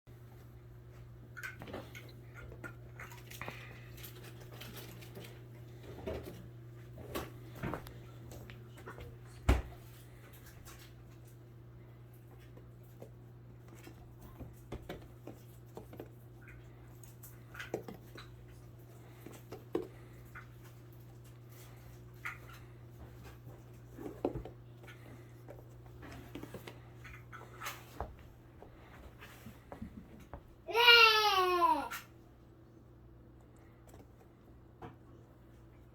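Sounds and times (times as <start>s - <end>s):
paws tapping and thumping: 12.4s - 16.3s.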